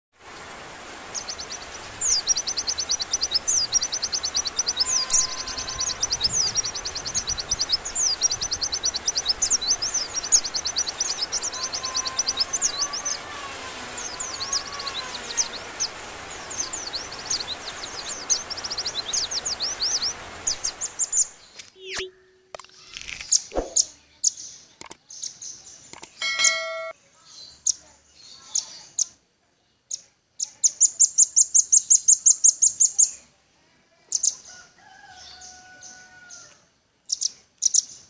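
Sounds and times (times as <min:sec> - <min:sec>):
bird trilling sharp chips: 0:21.5 - 0:23.9.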